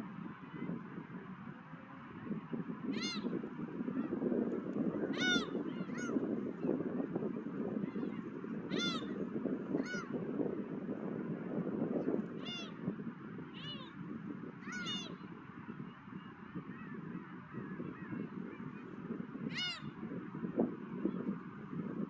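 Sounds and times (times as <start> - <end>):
low rush of wind: 0.0 - 22.0
gulls calling: 2.8 - 10.3, 12.4 - 20.3.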